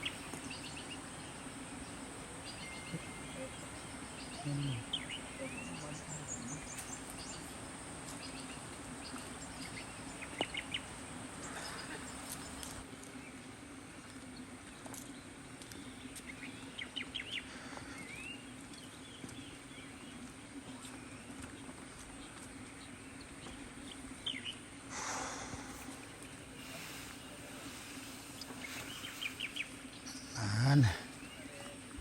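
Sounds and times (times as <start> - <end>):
forest birds chirping: 0.0 - 32.0
steady high-pitched whine: 22.7 - 32.0.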